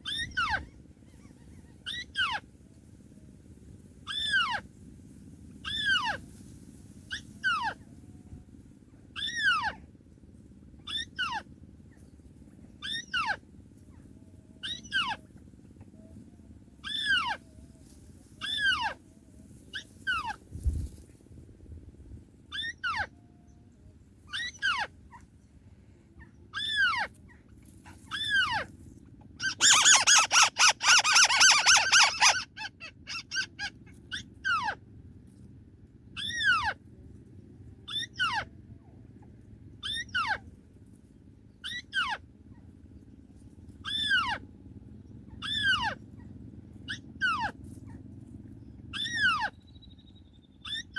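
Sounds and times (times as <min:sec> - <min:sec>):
rapid bird chattering: 0:29.4 - 0:34.8, 0:36.1 - 0:36.8, 0:41.6 - 0:42.6, 0:43.8 - 0:44.4, 0:45.2 - 0:47.6, 0:48.8 - 0:50.9.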